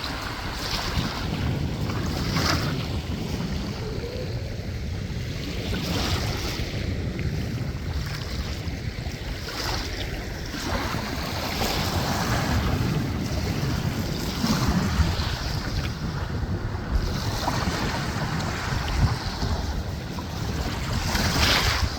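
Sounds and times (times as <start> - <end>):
sea waves washing on shore: 0.0 - 21.9
wind rumbling on microphone: 0.0 - 21.9.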